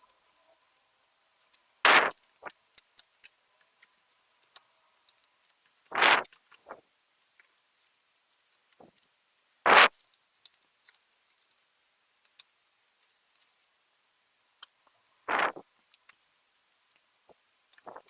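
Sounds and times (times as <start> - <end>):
faint clicks: 1.4 - 7.6, 9.8 - 13.8, 14.6 - 18.0.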